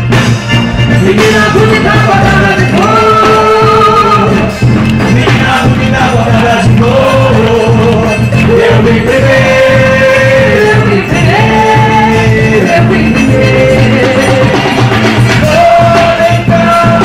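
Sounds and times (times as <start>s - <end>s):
loud music with singing: 0.0s - 17.0s.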